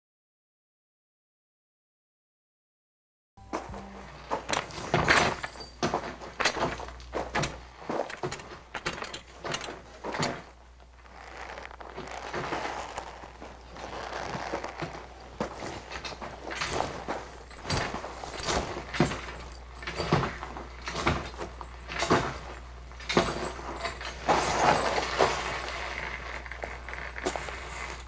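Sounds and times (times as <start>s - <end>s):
props knocking and rattling: 3.4s - 27.6s
light rustling: 3.5s - 28.0s.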